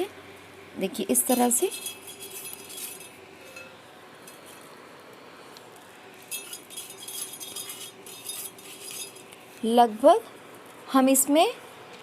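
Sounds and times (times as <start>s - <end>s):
spoon clinking against pot: 1.2s - 4.6s, 6.3s - 9.4s.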